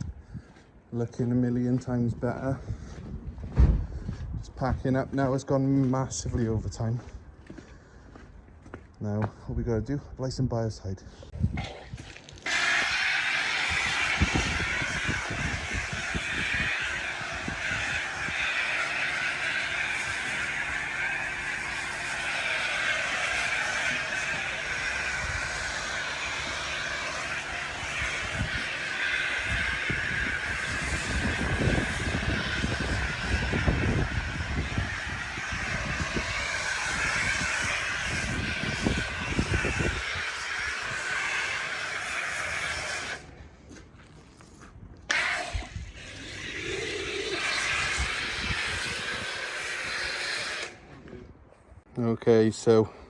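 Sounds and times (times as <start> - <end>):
pressure washer engine drone: 12.4 - 43.3, 45.1 - 50.8
spray nozzle hissing: 12.5 - 43.2.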